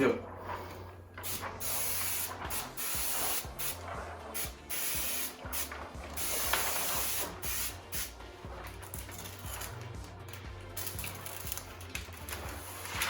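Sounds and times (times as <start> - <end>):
water sprayer hissing bursts: 1.2 - 8.2.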